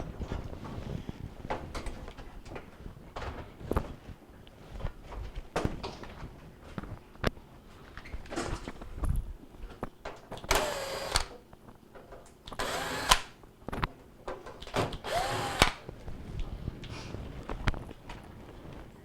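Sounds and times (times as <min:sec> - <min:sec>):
power drill motor: 0:10.5 - 0:11.4, 0:12.6 - 0:13.3, 0:15.0 - 0:15.8.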